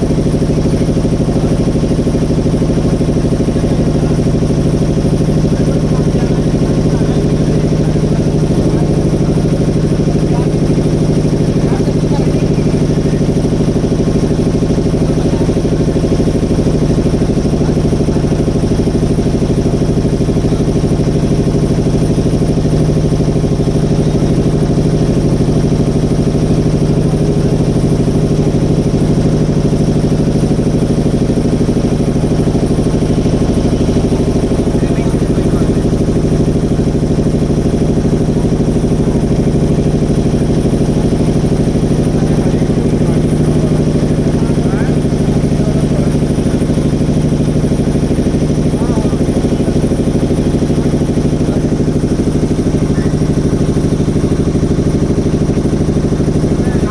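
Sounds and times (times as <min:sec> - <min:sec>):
motorboat engine running: 0:00.0 - 0:56.9.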